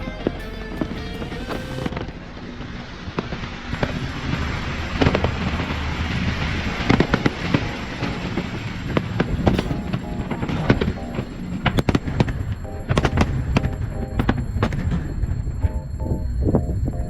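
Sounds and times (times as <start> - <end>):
continuous hiss: 0.0 - 17.0
fireworks bangs and crackling: 1.4 - 13.6, 14.2 - 15.4.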